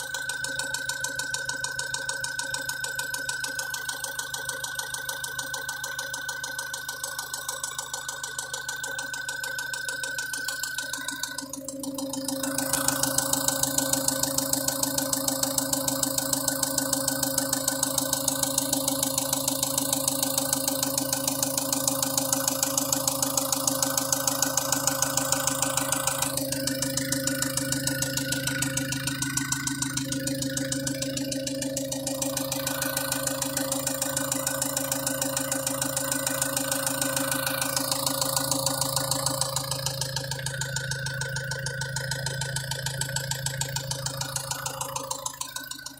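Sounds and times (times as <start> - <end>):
diesel engine idling with knock: 10.8 - 45.9.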